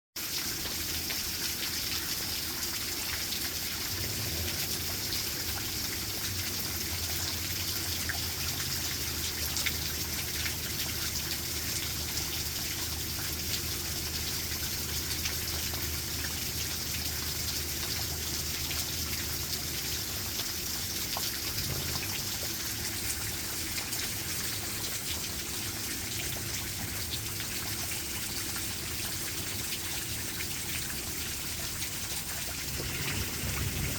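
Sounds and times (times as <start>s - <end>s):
steady rain: 0.2s - 33.9s
low rumble: 32.6s - 33.9s.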